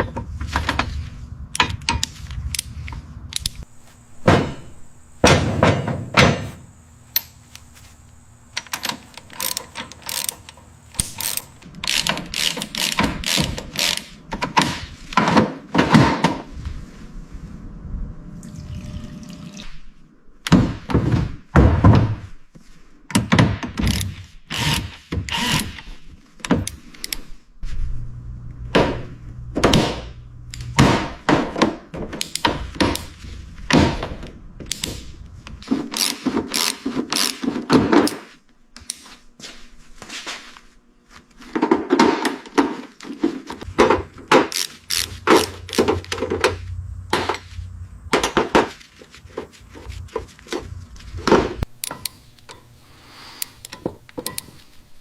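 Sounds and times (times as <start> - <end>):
low steady hum: 0.0 - 14.3, 16.5 - 20.5, 27.3 - 36.0, 43.5 - 55.0
knocks and thunks on car body: 4.2 - 6.5.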